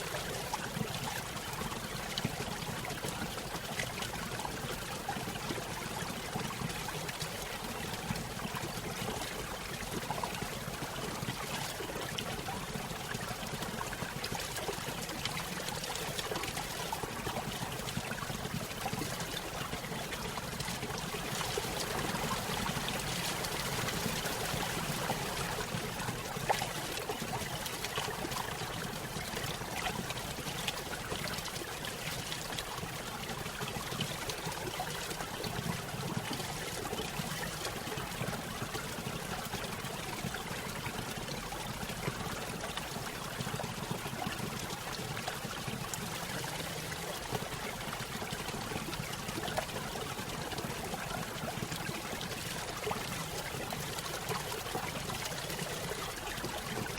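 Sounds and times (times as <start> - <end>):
water trickling and splashing: 0.0 - 56.9
low rushing water: 15.1 - 35.3.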